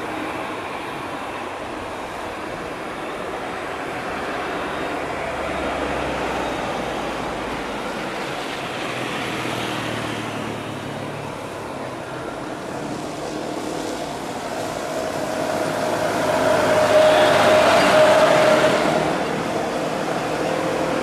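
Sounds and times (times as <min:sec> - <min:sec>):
jet engine roar: 0:00.0 - 0:21.0
jet engine whine: 0:00.0 - 0:21.0.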